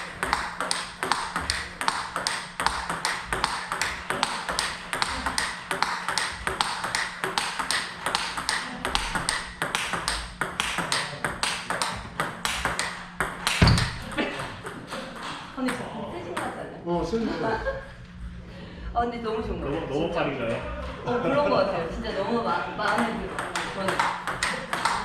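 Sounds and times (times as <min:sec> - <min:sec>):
table tennis ball hit by rackets: 0:00.0 - 0:16.6, 0:22.8 - 0:25.0
ball bouncing on table: 0:00.2 - 0:16.6, 0:22.9 - 0:25.0.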